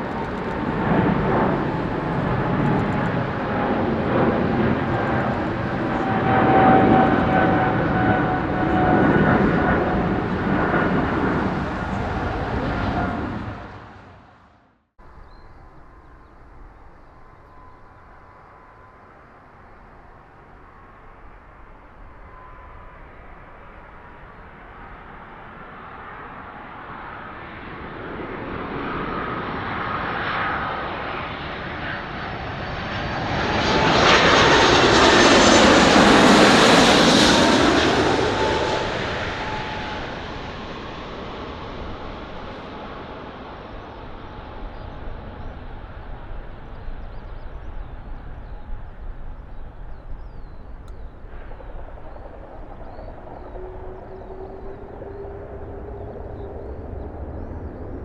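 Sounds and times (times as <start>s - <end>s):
jet airliner passing: 0.0s - 58.0s.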